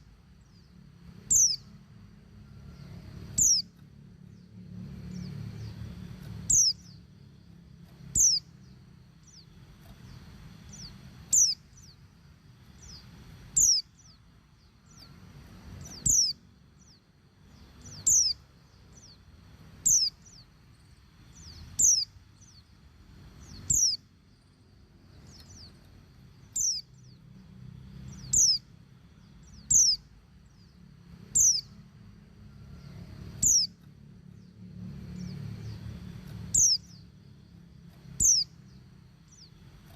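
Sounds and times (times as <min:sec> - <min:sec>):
faint low hum: 0:00.0 - 0:39.9
bird giving high falling calls: 0:00.6 - 0:01.7, 0:02.5 - 0:03.8, 0:08.1 - 0:09.5, 0:12.8 - 0:14.2, 0:15.8 - 0:19.2, 0:21.4 - 0:22.6, 0:23.4 - 0:24.0, 0:32.7 - 0:33.8, 0:38.2 - 0:39.9.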